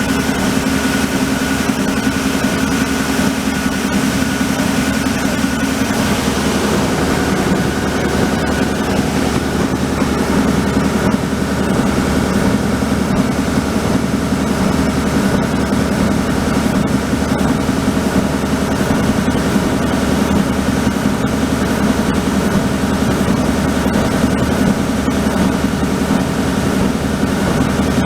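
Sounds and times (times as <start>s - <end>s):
belt sander motor humming: 4.0s - 14.4s.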